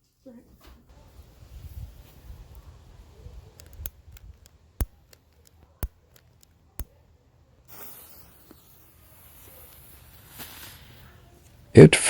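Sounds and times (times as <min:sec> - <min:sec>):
sharp clicks: 0:03.5 - 0:07.0
steady hiss: 0:07.7 - 0:12.0.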